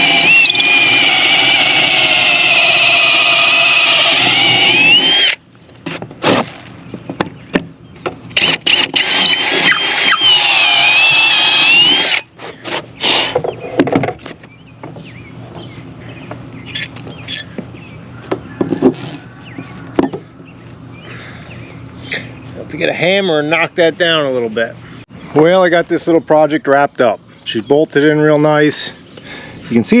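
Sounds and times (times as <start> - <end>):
power drill boring into wood: 0.0 - 5.4, 8.4 - 12.3.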